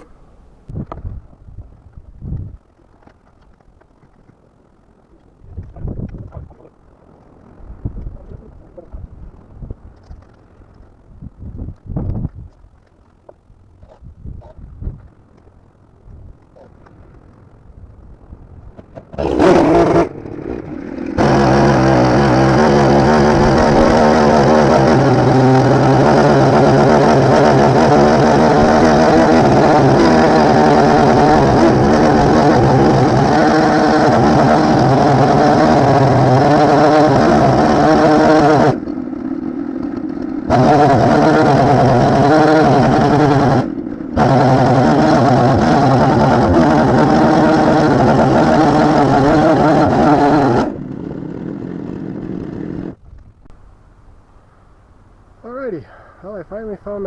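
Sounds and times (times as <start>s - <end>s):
chainsaw milling log: 18.6s - 53.1s.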